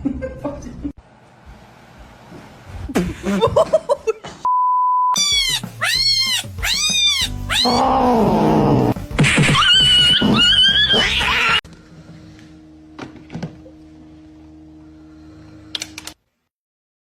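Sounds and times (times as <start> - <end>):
short steady beep: 4.5 - 5.2
cat meowing loudly: 5.2 - 8.4.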